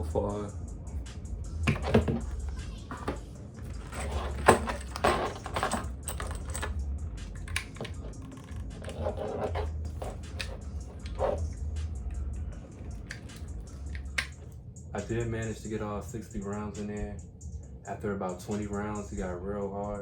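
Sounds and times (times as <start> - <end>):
rounds clicking into magazine: 7.4 - 11.2, 13.0 - 14.5.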